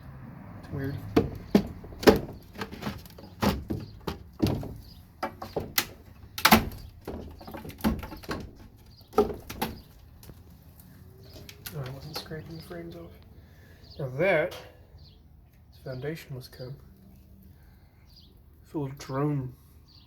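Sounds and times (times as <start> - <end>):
wooden boxes knocking and scraping: 0.7 - 10.4.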